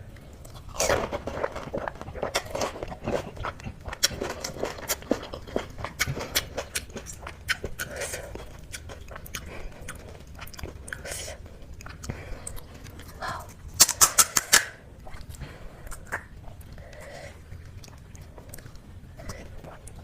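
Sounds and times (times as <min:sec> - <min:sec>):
person chewing crunchy food: 0:00.0 - 0:20.0.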